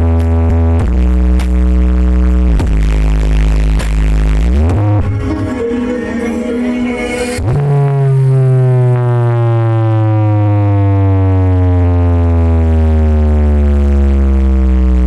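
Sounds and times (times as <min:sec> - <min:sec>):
deep synthesized bass tone sliding down: 0:04.8 - 0:08.7.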